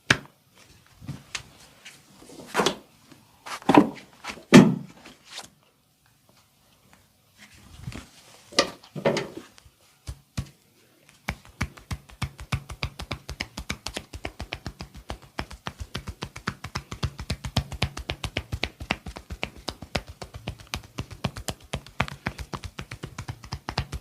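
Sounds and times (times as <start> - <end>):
hands tapping body in massage: 10.0 - 24.0
slaps: 10.0 - 24.0.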